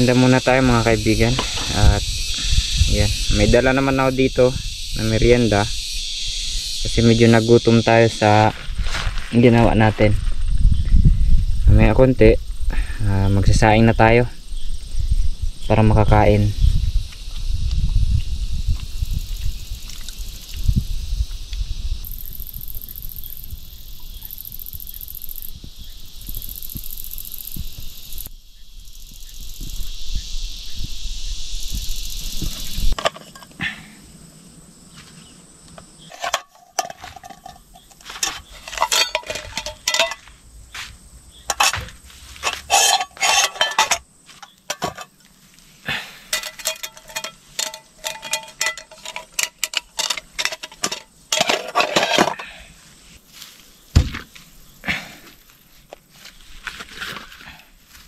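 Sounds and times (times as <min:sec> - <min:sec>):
insects buzzing in pulses: 0:00.0 - 0:58.0
cookware clinking and knocking: 0:36.1 - 0:40.2, 0:41.5 - 0:41.9, 0:42.5 - 0:44.0, 0:44.7 - 0:45.1, 0:46.3 - 0:52.4.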